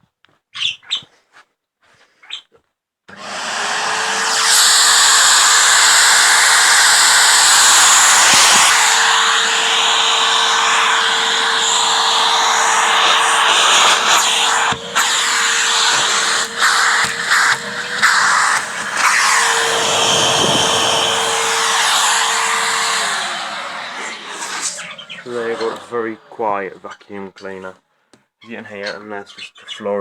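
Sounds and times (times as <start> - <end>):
vacuum cleaner motor running: 3.1 - 26.5.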